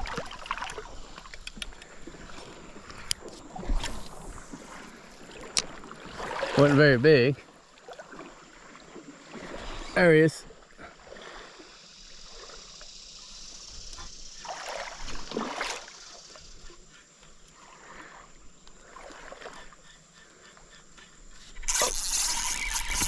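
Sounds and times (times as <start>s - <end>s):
water sloshing and splashing: 0.0s - 11.7s, 14.0s - 16.8s, 17.5s - 19.8s
rush of splashing and hiss: 1.9s - 7.3s, 8.0s - 16.9s.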